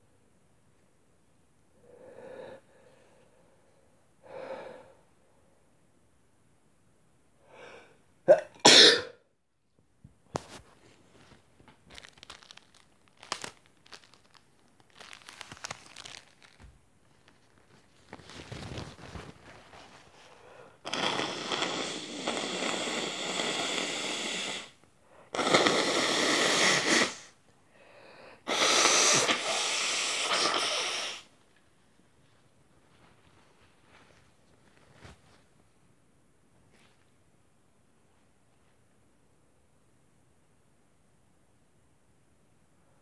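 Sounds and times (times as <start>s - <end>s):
soft rustling: 10.2s - 20.5s, 31.4s - 37.4s
person blowing nose: 20.7s - 27.4s, 28.4s - 31.3s.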